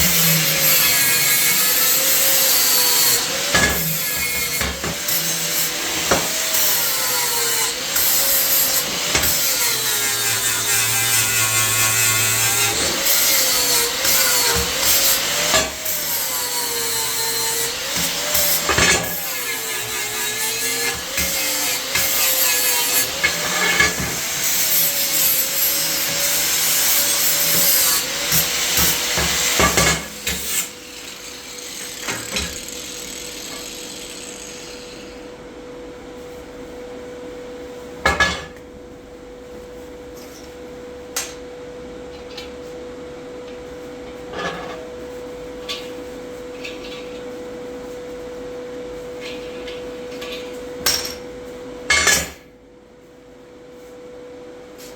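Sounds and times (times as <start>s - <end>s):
power tool working on metal: 0.0s - 35.3s.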